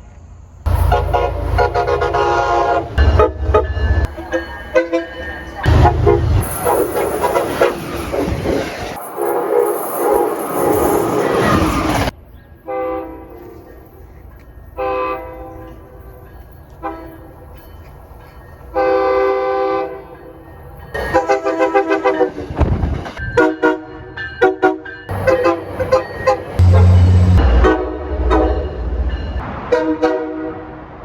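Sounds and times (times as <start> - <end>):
train air horn blasts: 0.7 - 3.8, 4.8 - 7.7, 12.7 - 13.6, 14.8 - 15.8, 16.8 - 17.3, 18.7 - 20.1, 21.0 - 22.4, 23.4 - 28.6, 29.7 - 30.8.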